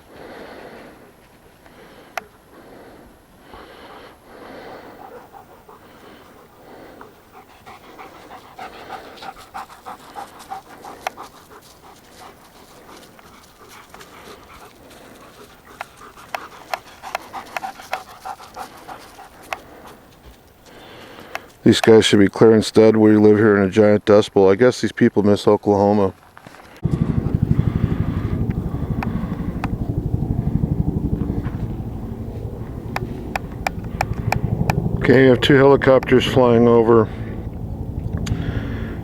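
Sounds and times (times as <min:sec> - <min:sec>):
dog panting: 0:01.8 - 0:20.4
sharp clicks: 0:32.9 - 0:34.8.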